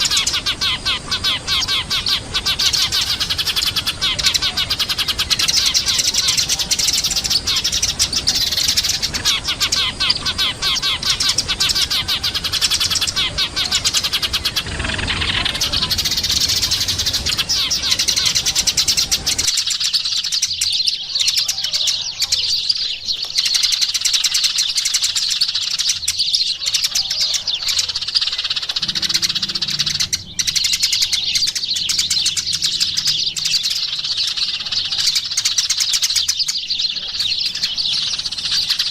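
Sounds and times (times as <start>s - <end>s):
low background rumble: 0.0s - 19.5s, 27.9s - 35.9s
sparrows chirping: 0.0s - 38.9s.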